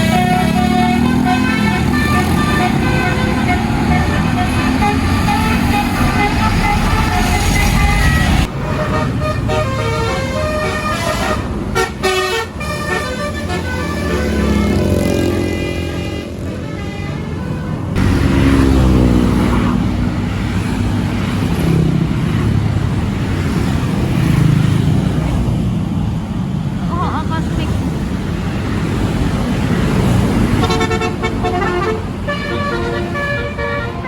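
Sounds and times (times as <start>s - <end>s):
bus horn playing a tune: 0.0s - 18.1s, 30.5s - 34.0s
bus engines and traffic rumble: 0.0s - 34.0s.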